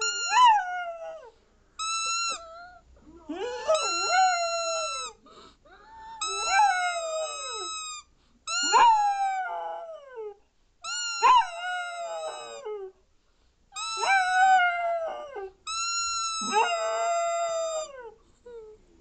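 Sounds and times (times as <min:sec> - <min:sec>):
dog howling: 0:06.2 - 0:07.7, 0:11.2 - 0:12.9, 0:13.8 - 0:15.5, 0:16.4 - 0:18.2.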